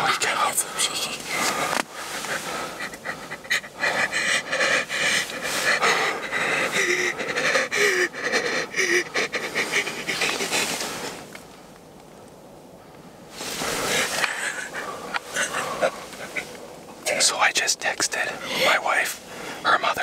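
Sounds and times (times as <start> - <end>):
person whimpering: 0.0 - 10.9
person panting heavily: 0.6 - 11.3, 13.6 - 16.5.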